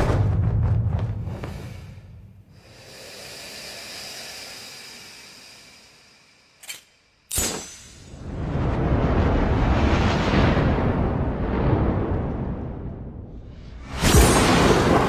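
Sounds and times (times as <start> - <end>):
hissing swell: 2.7 - 6.6.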